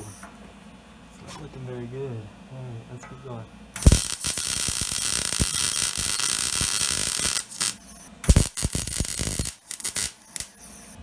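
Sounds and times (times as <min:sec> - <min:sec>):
welding arc crackling: 0:03.8 - 0:11.0.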